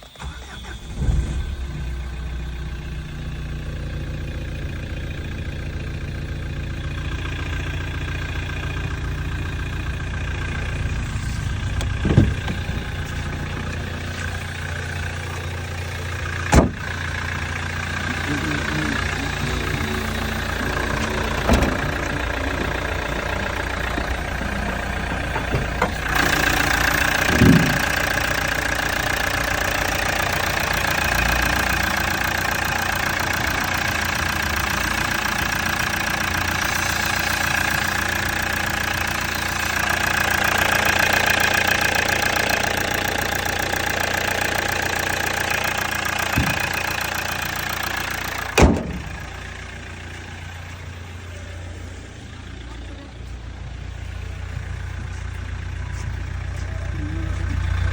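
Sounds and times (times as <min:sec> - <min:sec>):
engine running: 0:00.0 - 0:57.9
high turbo whine: 0:00.0 - 0:57.9
brief thumps: 0:11.4 - 0:13.6.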